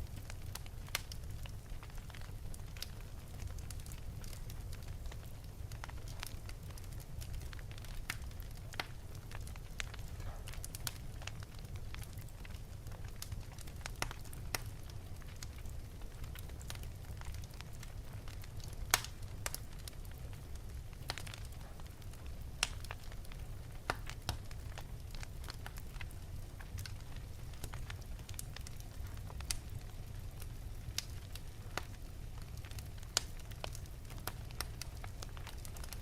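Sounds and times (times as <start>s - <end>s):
low rumble of flames: 0.0s - 36.0s
wood fire crackling and popping: 0.0s - 36.0s.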